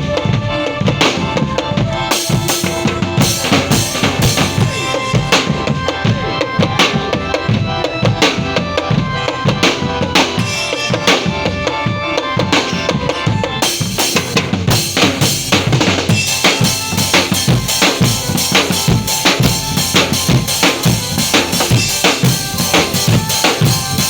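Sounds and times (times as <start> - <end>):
drums beating fast rhythm: 0.0 - 24.0
ringing pitched tones: 2.1 - 6.6, 10.2 - 24.0.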